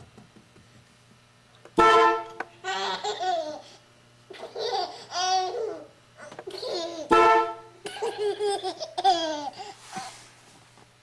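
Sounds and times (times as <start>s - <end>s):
horn honking: 1.8s - 2.5s, 7.0s - 7.8s
baby laughing: 2.6s - 7.2s, 7.8s - 9.8s.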